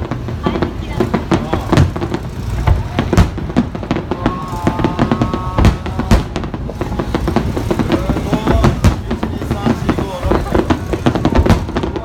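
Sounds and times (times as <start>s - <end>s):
fireworks bangs: 0.0s - 12.0s.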